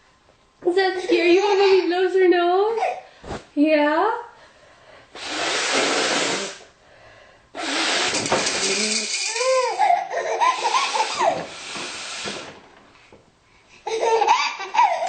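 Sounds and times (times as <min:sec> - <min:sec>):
baby laughing: 0:01.0 - 0:02.0, 0:08.9 - 0:11.4, 0:13.8 - 0:15.0
woman blowing her nose: 0:05.2 - 0:06.7, 0:07.6 - 0:09.8, 0:10.4 - 0:12.6.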